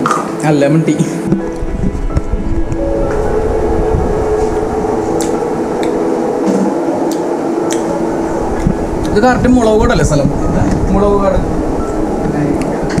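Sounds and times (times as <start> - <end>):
steady hum: 1.2 - 13.0
loud mechanical rumble: 1.3 - 13.0.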